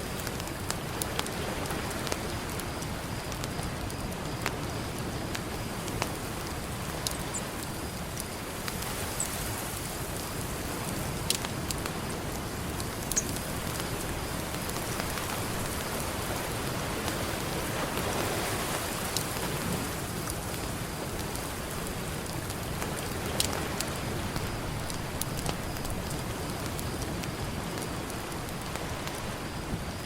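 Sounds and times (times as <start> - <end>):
campfire crackling: 0.0 - 30.0
ocean surf: 8.6 - 24.8.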